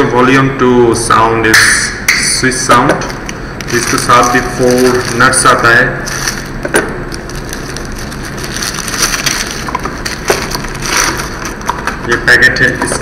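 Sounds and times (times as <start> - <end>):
plastic packet crinkling: 3.6 - 12.2.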